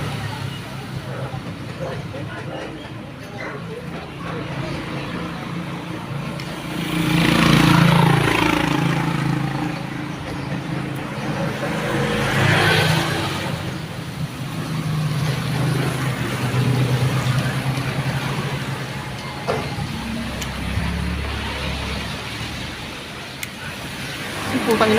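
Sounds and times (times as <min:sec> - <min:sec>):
traffic: 0:00.0 - 0:24.9.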